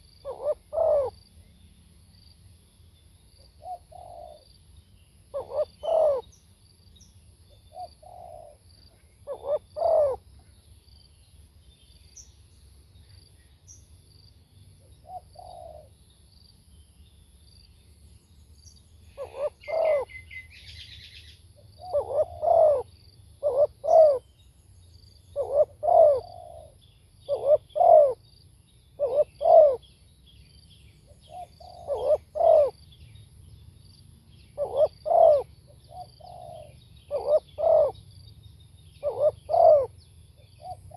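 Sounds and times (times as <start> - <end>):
dove cooing: 0.0 - 1.2, 3.6 - 4.4, 5.3 - 6.3, 7.7 - 8.6, 9.2 - 10.3, 15.0 - 15.9, 19.2 - 20.2, 21.8 - 24.2, 25.4 - 28.2, 29.0 - 29.8, 31.3 - 32.8, 34.6 - 38.0, 39.0 - 40.9
bird twittering: 5.4 - 6.4, 18.6 - 24.5, 25.2 - 28.2, 29.0 - 33.2, 34.4 - 40.9.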